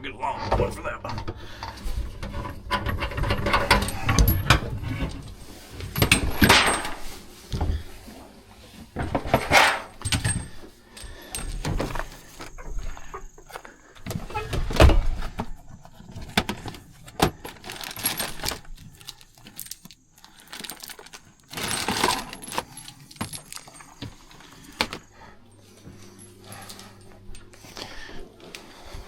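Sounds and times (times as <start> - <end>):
metallic clinks and rattles: 2.5 - 7.2, 9.4 - 13.2, 16.0 - 27.8.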